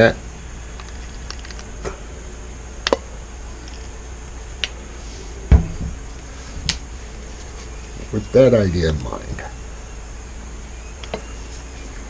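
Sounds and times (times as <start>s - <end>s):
low steady hum: 0.0s - 12.0s
dull knock: 5.5s - 6.0s.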